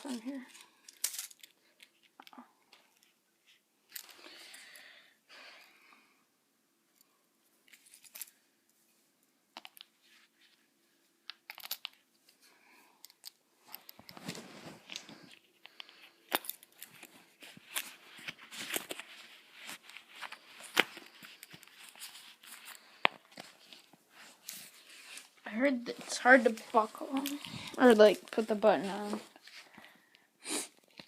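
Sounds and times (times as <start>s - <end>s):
packaging rustling and crinkling: 13.7s - 29.8s.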